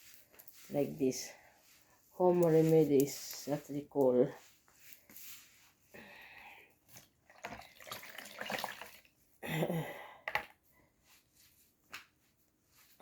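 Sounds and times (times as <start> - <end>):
water splashing in a basin: 7.0 - 9.2.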